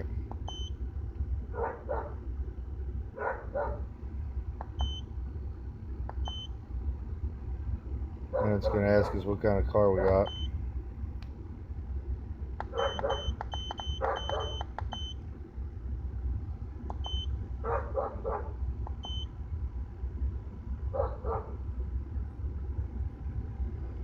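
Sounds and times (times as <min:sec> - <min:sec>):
car engine low rumble: 0:00.0 - 0:24.0
short high beeps: 0:12.8 - 0:15.2.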